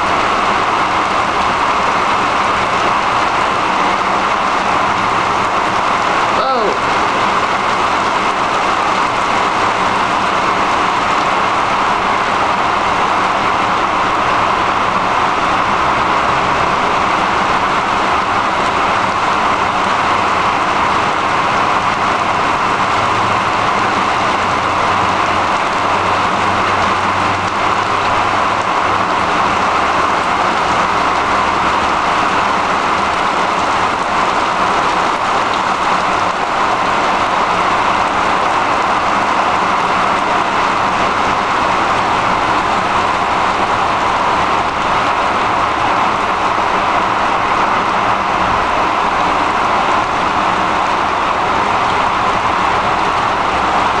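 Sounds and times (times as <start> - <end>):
steady rain hissing: 0.0 - 54.0.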